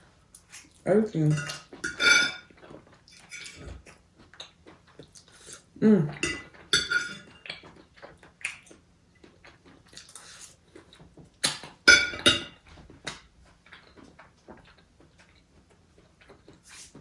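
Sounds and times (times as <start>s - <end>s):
chewing and wet mouth sounds: 0.2s - 0.8s, 2.4s - 5.8s, 7.3s - 11.8s, 12.8s - 17.0s.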